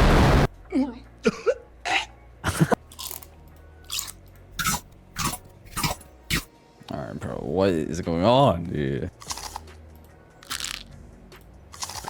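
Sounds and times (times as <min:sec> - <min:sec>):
monster chomping and crunching: 0:09.2 - 0:09.7, 0:10.4 - 0:10.9, 0:11.7 - 0:12.0.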